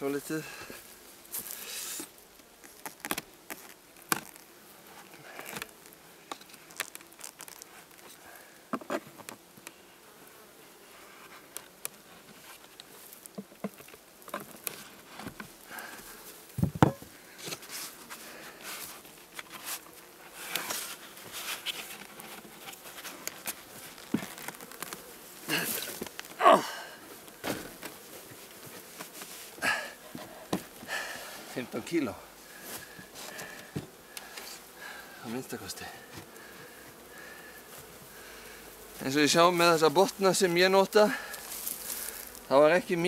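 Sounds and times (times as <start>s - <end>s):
honeybees buzzing: 0.0s - 43.0s
clicks and knocks of wooden hive parts: 2.5s - 9.8s, 11.2s - 26.4s, 27.2s - 29.3s
heavy thump: 16.6s - 17.1s.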